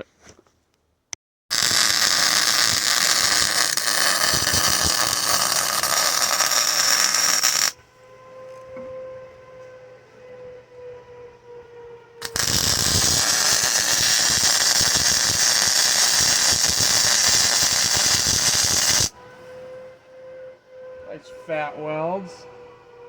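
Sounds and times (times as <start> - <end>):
arc welding crackling hiss: 1.5 - 7.8, 12.2 - 19.1.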